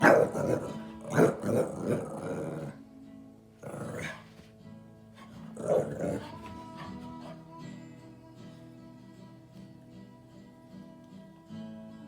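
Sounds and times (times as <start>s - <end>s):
dog growling: 0.0s - 2.8s, 3.6s - 4.3s, 5.2s - 7.4s
background music: 0.0s - 12.0s.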